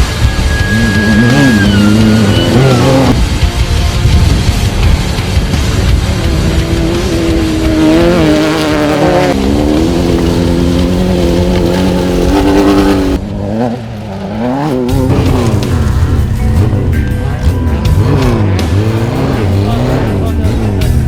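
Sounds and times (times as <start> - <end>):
off-road vehicle engine revving: 0.0 - 3.4, 4.3 - 21.0.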